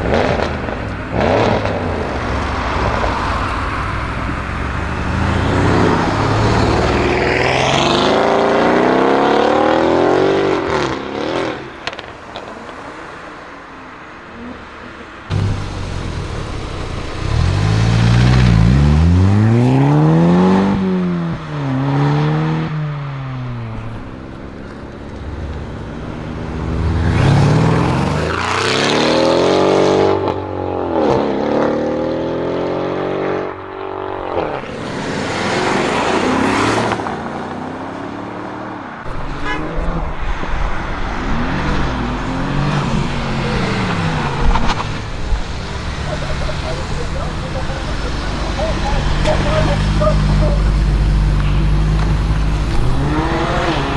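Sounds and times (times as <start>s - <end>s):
exhaust pop: 0.0s - 7.3s, 15.3s - 19.8s, 23.5s - 28.6s, 39.1s - 53.9s
car engine revving: 0.0s - 12.0s, 15.3s - 30.3s, 39.0s - 53.9s.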